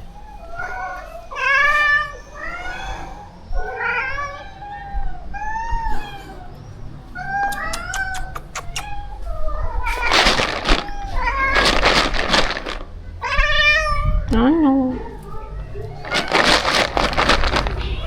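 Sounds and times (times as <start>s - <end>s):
cats meowing: 0.0s - 18.0s
sharp clicks: 7.5s - 8.9s.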